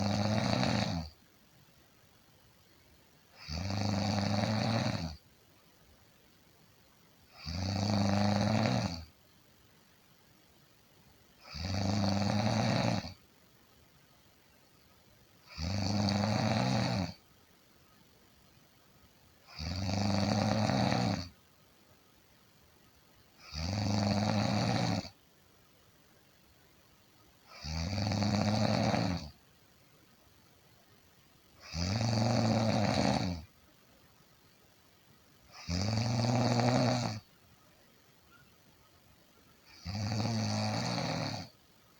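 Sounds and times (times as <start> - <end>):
person snoring: 0.0 - 1.1, 3.4 - 5.2, 7.3 - 9.1, 11.4 - 13.2, 15.5 - 17.2, 19.5 - 21.3, 23.4 - 25.2, 27.5 - 29.3, 31.6 - 33.5, 35.5 - 37.3, 39.7 - 41.5
quiet breathing: 0.0 - 1.3.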